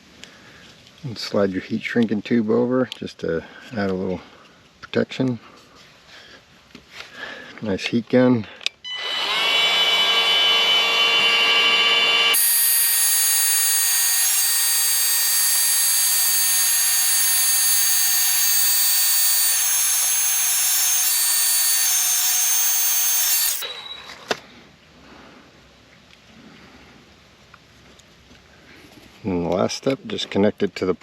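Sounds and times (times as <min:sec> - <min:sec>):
heat gun fan whine: 0:08.9 - 0:24.3.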